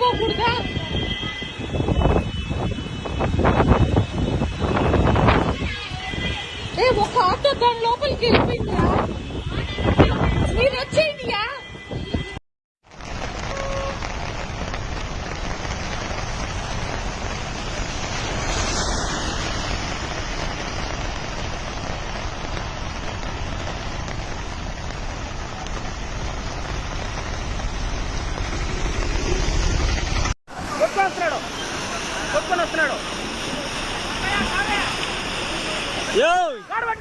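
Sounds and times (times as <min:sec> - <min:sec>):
rush of water: 0:12.8 - 0:37.0.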